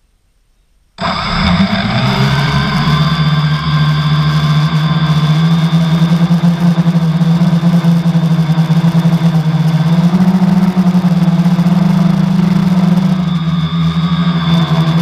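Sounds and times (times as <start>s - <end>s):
drone motors humming: 1.0s - 15.0s.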